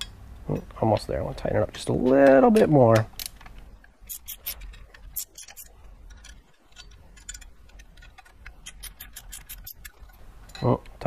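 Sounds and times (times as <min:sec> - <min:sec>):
hand ratchet clicking: 0:04.1 - 0:10.0.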